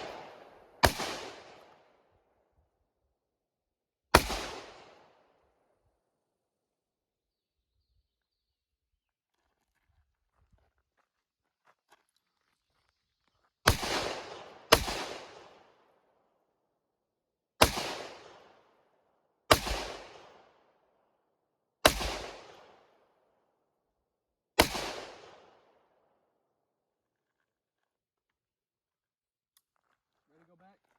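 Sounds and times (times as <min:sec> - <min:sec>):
rifle single shots: 0:00.0 - 0:01.9, 0:04.1 - 0:05.3, 0:13.7 - 0:15.7, 0:17.6 - 0:18.6, 0:19.5 - 0:20.5, 0:21.8 - 0:22.9, 0:24.6 - 0:25.6.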